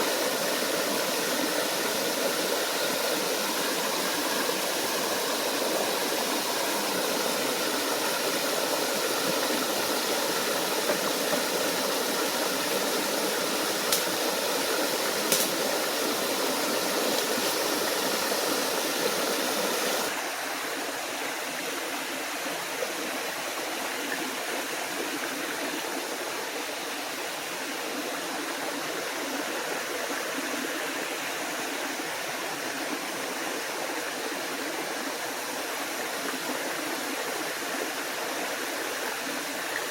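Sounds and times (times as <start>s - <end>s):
waterfall and stream rushing: 0.0s - 39.9s
small sharp clicks: 15.3s - 15.6s.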